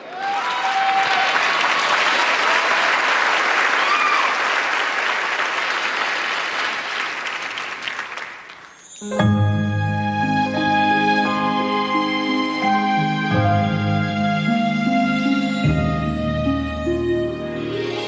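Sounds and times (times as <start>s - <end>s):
audience applauding and cheering: 0.0s - 8.9s
music track: 8.9s - 18.0s.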